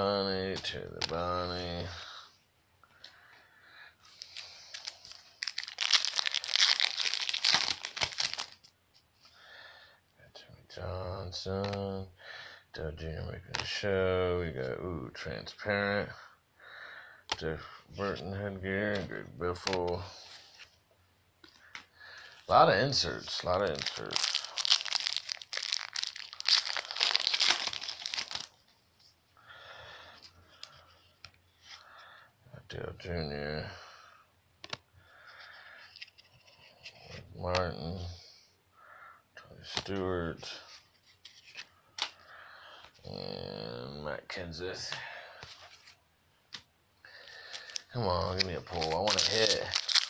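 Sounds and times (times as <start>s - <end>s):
card pack wrapper crinkling: 4.1s - 8.7s, 21.4s - 28.6s, 47.2s - 50.0s.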